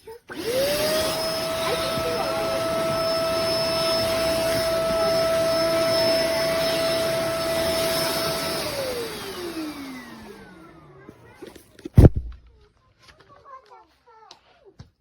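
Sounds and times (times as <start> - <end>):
upright vacuum whining: 0.2 - 12.2
vacuum motor winding down: 0.3 - 12.0.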